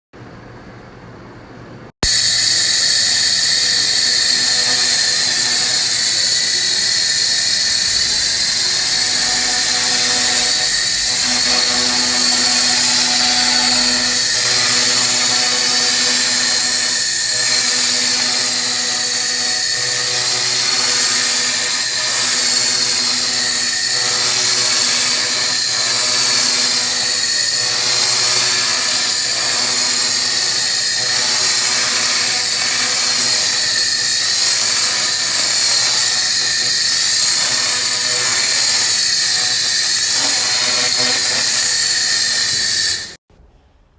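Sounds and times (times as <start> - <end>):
low pulsing tone: 2.0 - 36.5
laser cleaner hissing: 2.0 - 43.2.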